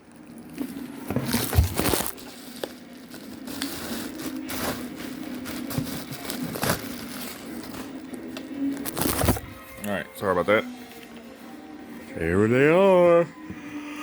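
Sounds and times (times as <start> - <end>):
packaging crinkling and rustling: 0.0 - 10.0.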